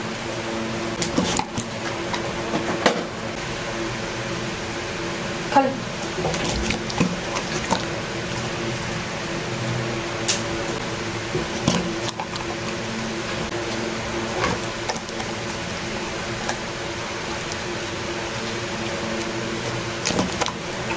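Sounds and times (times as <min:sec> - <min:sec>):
steady mechanical hum: 0:00.0 - 0:20.9
puppy eating wet mouth sounds: 0:01.0 - 0:02.4, 0:06.0 - 0:08.6, 0:11.3 - 0:20.9.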